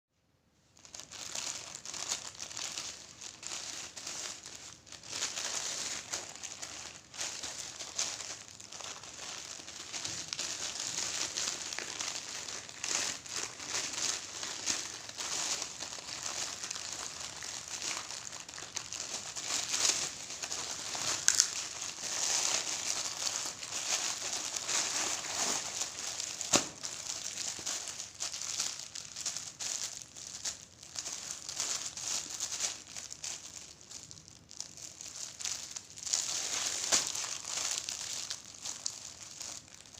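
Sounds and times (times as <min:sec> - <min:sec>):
parcel packaging crinkling: 0:00.7 - 0:39.9.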